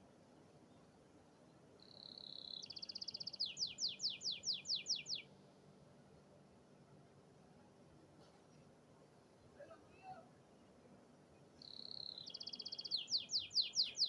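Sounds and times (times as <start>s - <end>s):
canary singing: 2.0s - 5.2s, 11.6s - 14.0s.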